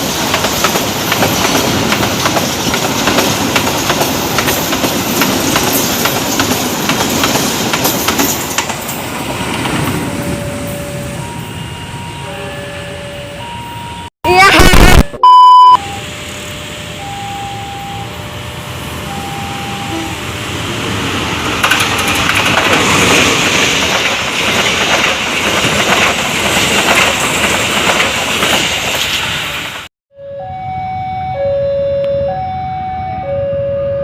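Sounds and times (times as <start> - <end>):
train rumble and wheel clatter: 0.0 - 14.0, 16.1 - 29.9
two-tone electronic warning alarm: 10.2 - 14.1, 14.9 - 20.4, 30.1 - 34.0.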